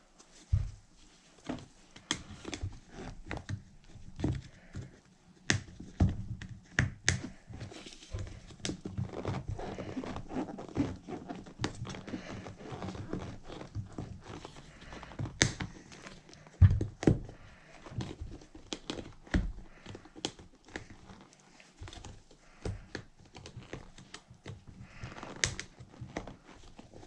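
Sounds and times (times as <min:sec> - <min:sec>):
rubber tire rubbing and crinkling: 0:05.7 - 0:27.0.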